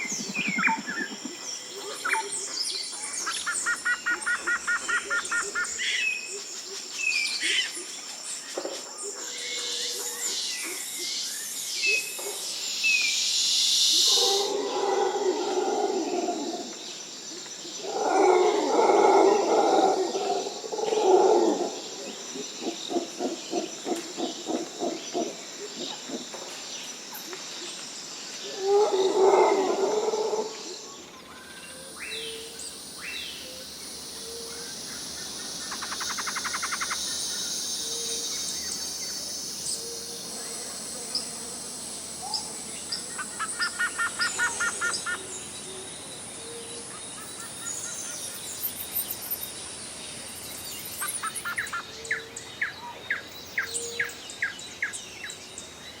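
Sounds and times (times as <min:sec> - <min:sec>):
insects droning: 0:00.0 - 0:56.0
bird chirps: 0:31.2 - 0:40.1
rapid bird trills: 0:34.2 - 0:38.1.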